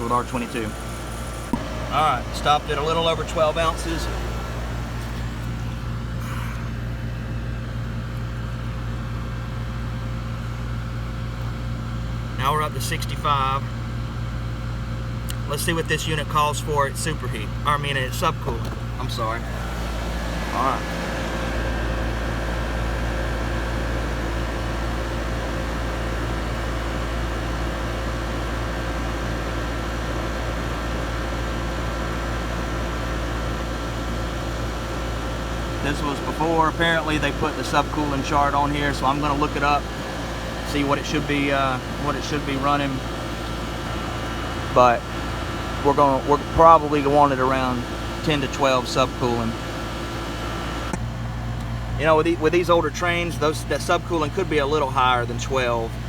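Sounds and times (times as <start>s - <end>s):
air conditioner low hum: 0.0s - 56.0s.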